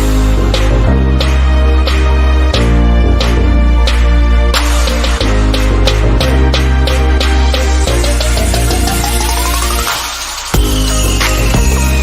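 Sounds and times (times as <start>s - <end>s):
electronic music with bass beat: 0.0s - 12.0s
rising synth sweep: 3.2s - 12.0s.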